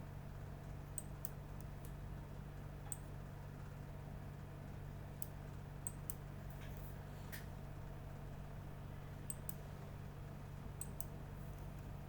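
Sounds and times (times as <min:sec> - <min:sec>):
low room hum: 0:00.0 - 0:12.0
faint computer mouse clicks: 0:09.3 - 0:09.6, 0:10.8 - 0:11.7.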